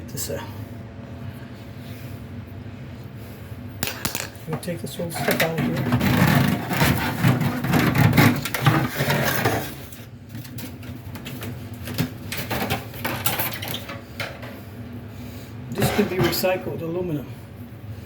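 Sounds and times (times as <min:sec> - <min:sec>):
aluminum duct crinkling and rattling: 0:04.6 - 0:14.4.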